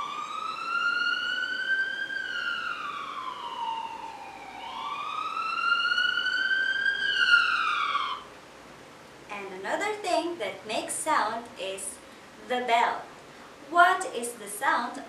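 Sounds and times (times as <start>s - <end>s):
ambulance siren wailing: 0.0s - 8.3s.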